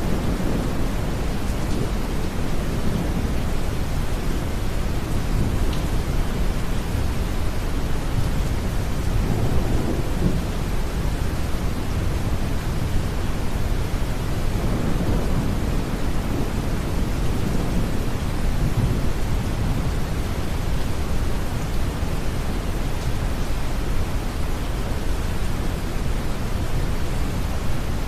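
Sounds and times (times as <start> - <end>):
distant thunder rumbles: 0.0 - 4.7, 14.4 - 20.7
rain: 0.0 - 28.0.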